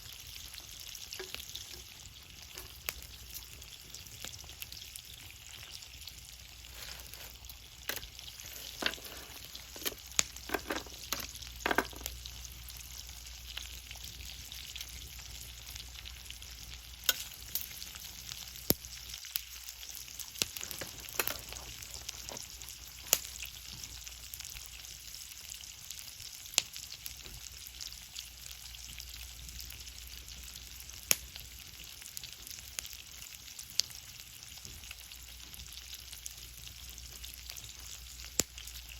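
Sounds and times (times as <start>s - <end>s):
campfire crackling and popping: 0.0s - 5.8s, 6.7s - 12.2s, 17.0s - 19.5s, 20.2s - 23.8s, 37.1s - 38.7s.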